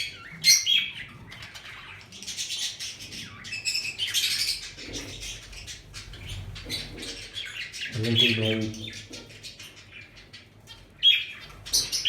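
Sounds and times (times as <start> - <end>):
lovebirds chirping: 0.0 - 12.0.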